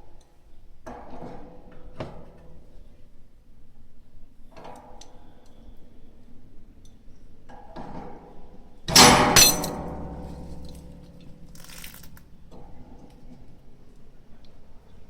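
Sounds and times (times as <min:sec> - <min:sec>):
hard objects clanking: 0:09.0 - 0:12.2.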